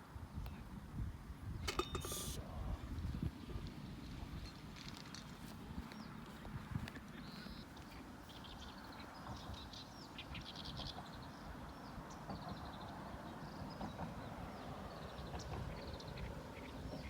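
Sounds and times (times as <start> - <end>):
small birds chirping: 5.3 - 17.0.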